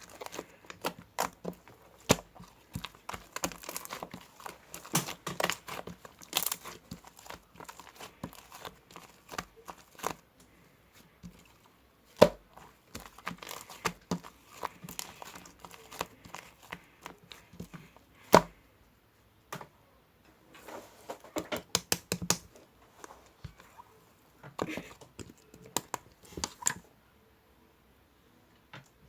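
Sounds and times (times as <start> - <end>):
crinkly material rustling: 0.0 - 18.6.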